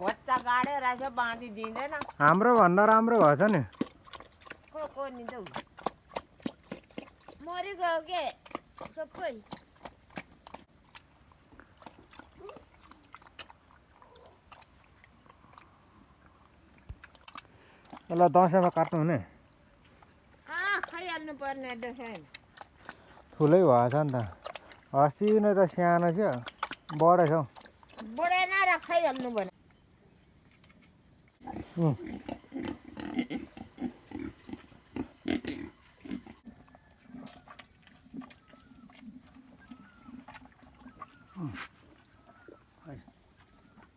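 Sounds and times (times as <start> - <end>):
pig chewing: 0.0 - 29.6, 30.5 - 43.9
pig grunting: 31.4 - 43.2.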